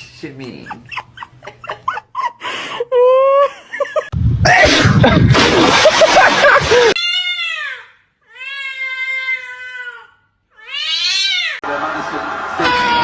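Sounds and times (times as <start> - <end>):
loud mixed noise: 4.1 - 7.0, 11.7 - 13.0
cat meowing: 10.6 - 11.6.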